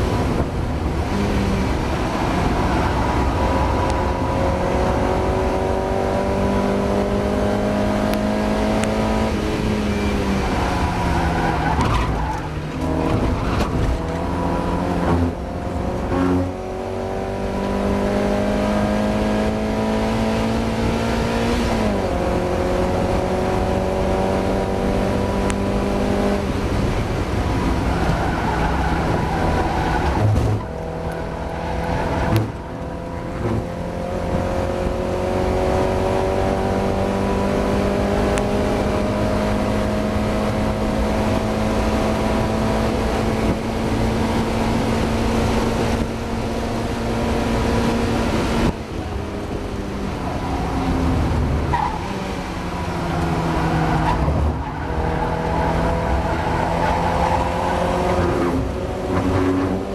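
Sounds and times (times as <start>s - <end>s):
race car engine revving: 0.0s - 59.9s
road and wind noise: 0.0s - 59.9s.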